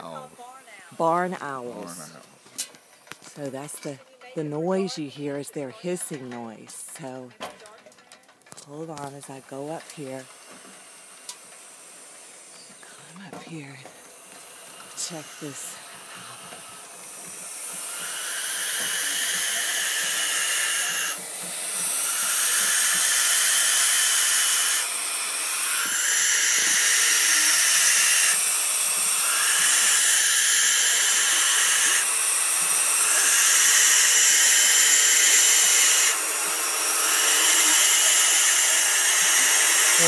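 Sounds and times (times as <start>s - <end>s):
barn owls hissing: 8.7s - 40.0s.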